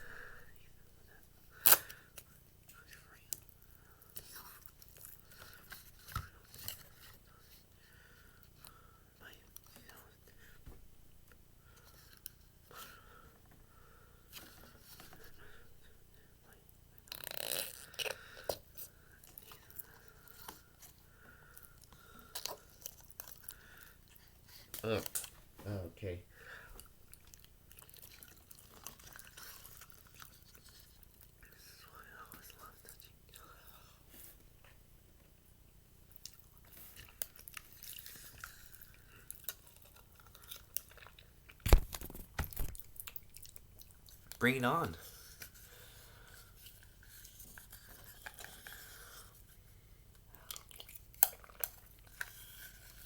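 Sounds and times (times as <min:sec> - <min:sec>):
jello squishing with wet clicks: 0:50.1 - 0:52.4.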